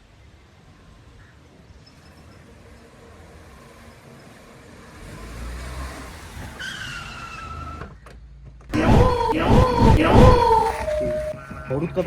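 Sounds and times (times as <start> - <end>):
car engine and tyre rumble: 0.0 - 8.8
brakes squealing: 5.0 - 8.0.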